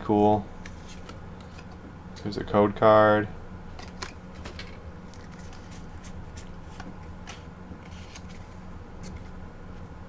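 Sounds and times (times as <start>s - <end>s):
steady low hum: 0.0s - 10.0s
cards clicking and rustling: 0.6s - 1.9s, 3.7s - 9.4s.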